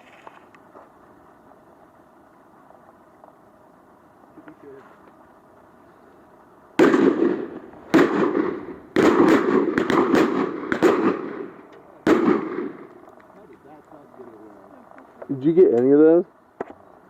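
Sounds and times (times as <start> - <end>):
shotgun shots with echo: 6.8 - 12.9.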